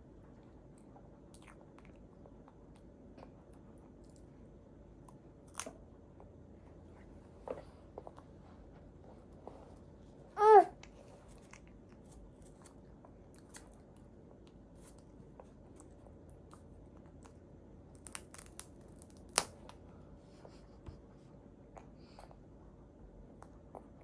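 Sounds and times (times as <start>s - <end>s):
baby eating clicks and crunches: 10.8s - 19.8s.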